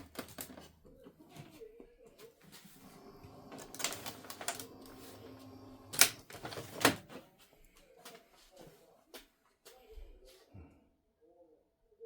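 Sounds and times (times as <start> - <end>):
printer motor hum: 2.7 - 6.6.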